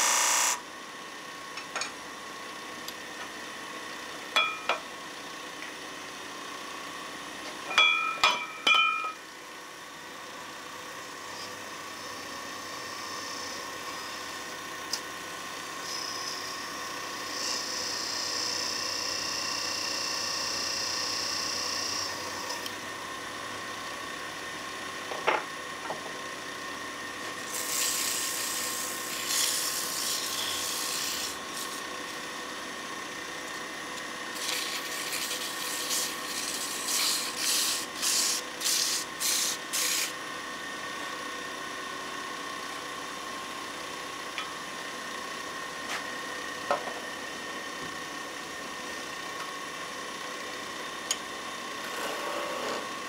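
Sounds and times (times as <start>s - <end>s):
wood lathe motor whine: 0.0s - 1.0s, 9.4s - 53.0s
tool scraping spinning wood: 27.3s - 32.4s, 34.3s - 40.2s, 51.8s - 53.0s.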